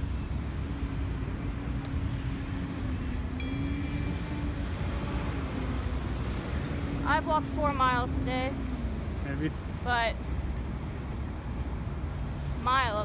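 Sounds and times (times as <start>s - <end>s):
short high ringing tone: 3.4s - 4.7s.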